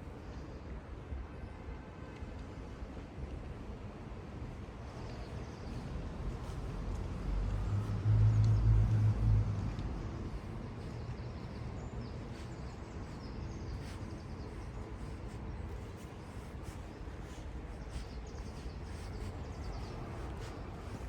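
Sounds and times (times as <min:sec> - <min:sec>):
small birds chirping: 0:10.1 - 0:21.0.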